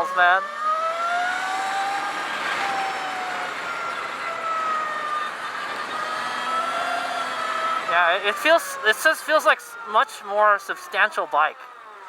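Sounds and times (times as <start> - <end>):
electric motorcycle motor whine: 0.0 - 8.5
wind and road noise: 0.0 - 12.0.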